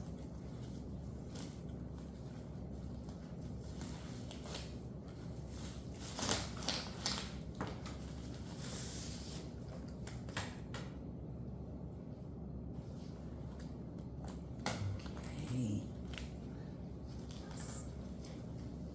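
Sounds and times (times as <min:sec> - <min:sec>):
steady low hum: 0:11.0 - 0:18.9.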